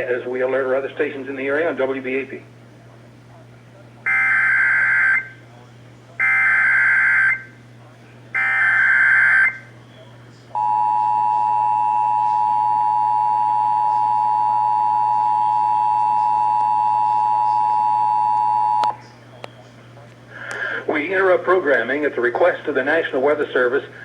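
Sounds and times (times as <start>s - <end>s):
two-tone alert signal: 10.6s - 18.9s.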